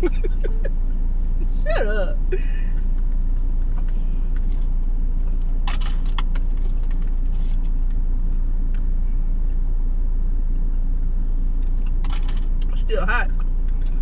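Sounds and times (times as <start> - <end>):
low rumble inside car cabin: 0.0 - 14.0.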